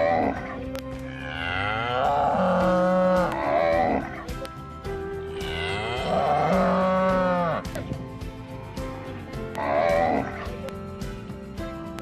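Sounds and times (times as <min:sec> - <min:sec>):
cow mooing: 0:00.0 - 0:04.3, 0:05.3 - 0:07.7, 0:09.5 - 0:10.5.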